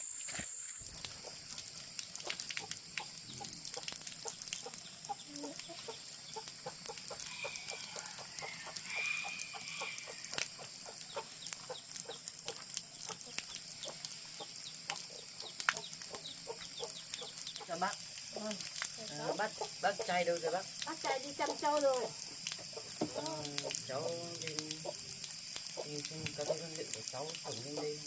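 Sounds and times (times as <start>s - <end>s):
chickens clucking: 3.0s - 17.8s
rooster crowing faintly: 7.2s - 10.4s.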